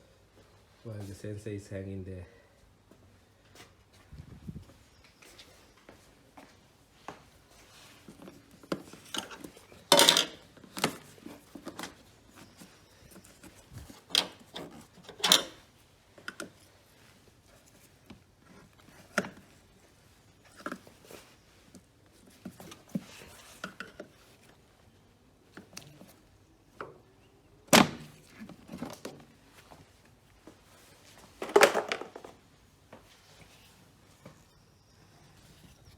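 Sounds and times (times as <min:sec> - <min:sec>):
tools clicking and knocking: 0:08.2 - 0:11.9, 0:14.0 - 0:15.6.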